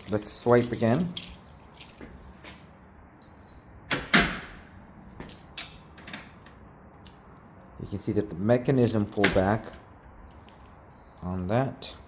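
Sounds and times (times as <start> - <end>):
door latch solenoid clunks: 3.9 - 4.5.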